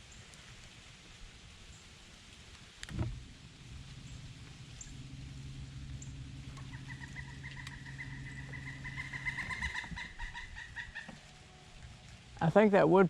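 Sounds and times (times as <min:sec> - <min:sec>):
low steady hum: 0:00.0 - 0:13.0
woodpecker laughing call: 0:06.5 - 0:11.2.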